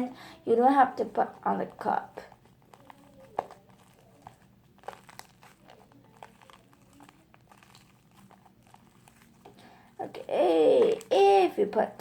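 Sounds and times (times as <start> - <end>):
slime sticky clicks and crackles: 2.6 - 9.6.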